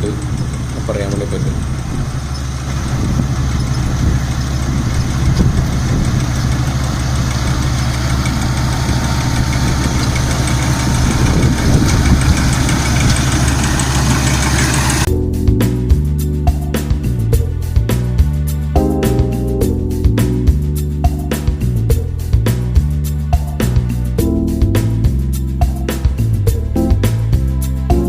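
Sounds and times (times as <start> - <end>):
threshing machinery rattling: 0.0 - 15.1
combine harvester engine drone: 0.0 - 17.8.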